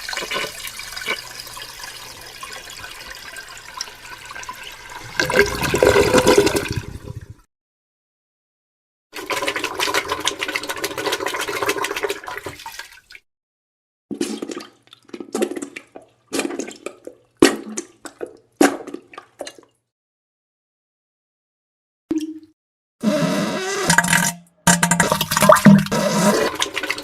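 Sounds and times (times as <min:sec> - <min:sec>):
wet spluttering fart noise: 0:23.0 - 0:27.0.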